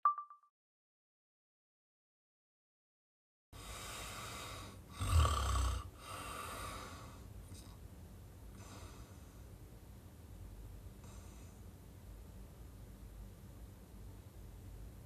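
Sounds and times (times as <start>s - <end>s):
loud snort: 4.9s - 5.9s
person snoring: 4.9s - 6.6s.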